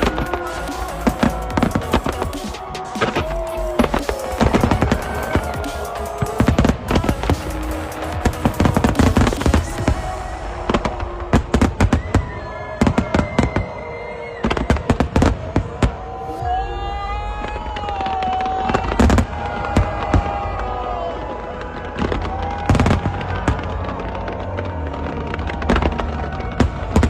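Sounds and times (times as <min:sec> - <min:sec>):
music playing: 0:00.0 - 0:13.1
fireworks bangs and cracks: 0:00.0 - 0:27.0.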